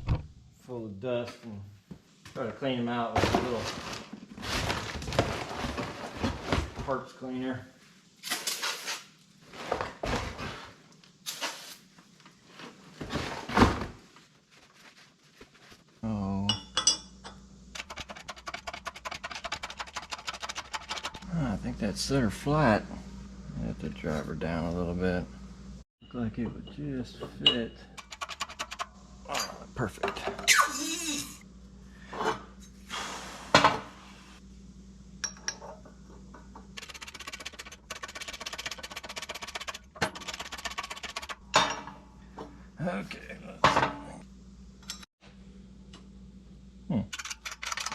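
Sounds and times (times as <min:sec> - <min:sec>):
metal parts knocking: 0:47.1 - 0:47.9.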